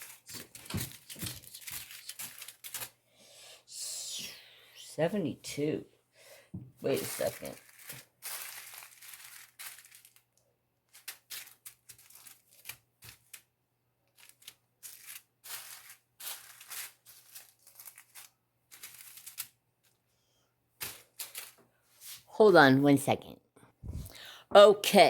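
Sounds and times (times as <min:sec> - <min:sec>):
plastic bags crinkling: 0:00.0 - 0:03.0, 0:06.8 - 0:13.5, 0:14.1 - 0:19.6, 0:20.8 - 0:21.6.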